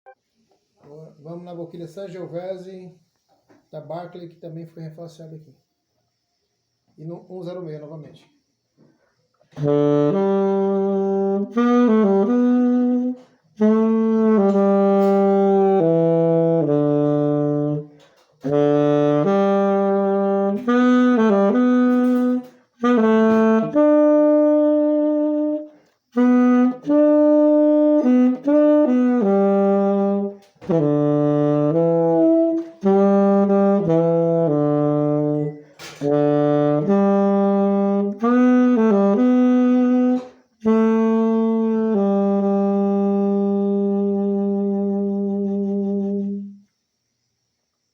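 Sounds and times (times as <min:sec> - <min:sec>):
breaths: 0:08.8 - 0:09.3
saxophone melody: 0:09.4 - 0:46.7.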